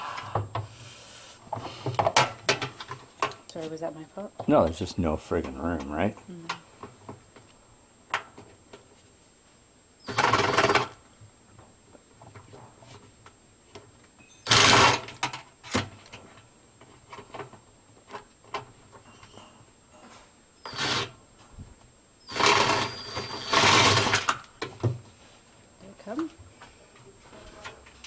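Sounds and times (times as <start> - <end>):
power drill running: 14.4 - 15.1, 20.6 - 21.1, 22.3 - 24.4.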